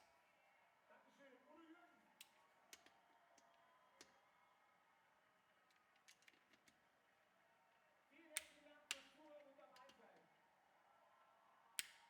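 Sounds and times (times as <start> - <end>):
faint sharp clicks: 11.8 - 12.0.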